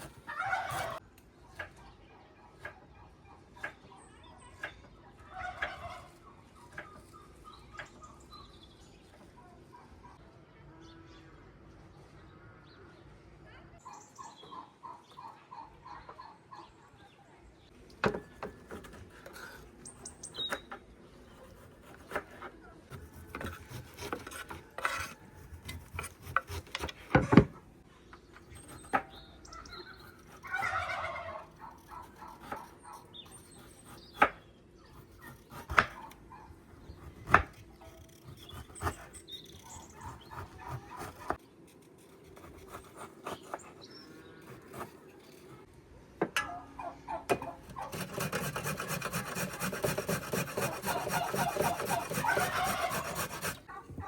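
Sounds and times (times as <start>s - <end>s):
rhythmic rasping scrape: 47.6s - 53.7s.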